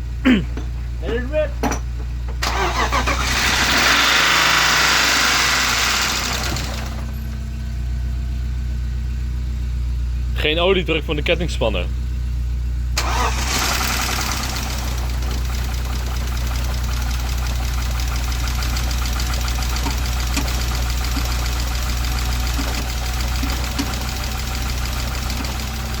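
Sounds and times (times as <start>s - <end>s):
car engine running: 0.0s - 26.0s
fast metallic rattle: 13.0s - 26.0s.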